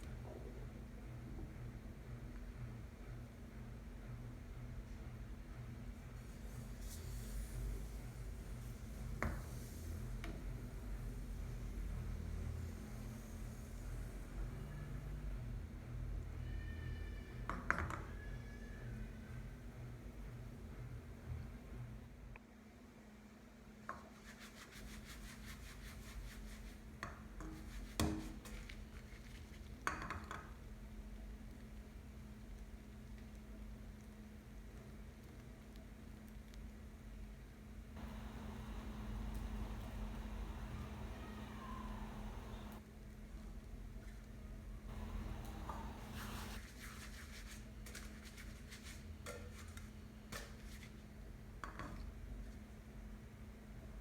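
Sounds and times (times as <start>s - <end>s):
steady low hum: 38.0s - 42.8s, 44.9s - 46.6s.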